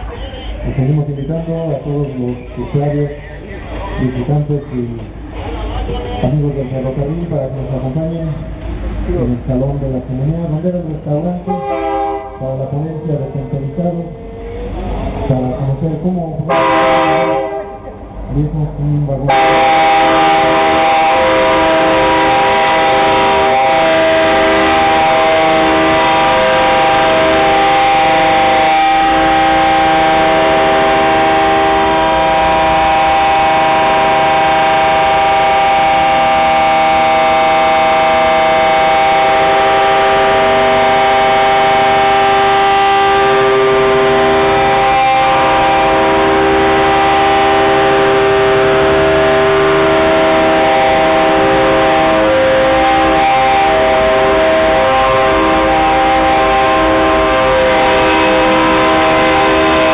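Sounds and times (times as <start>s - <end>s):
locomotive air horn chord: 11.4s - 15.0s, 16.5s - 18.2s, 19.3s - 59.9s.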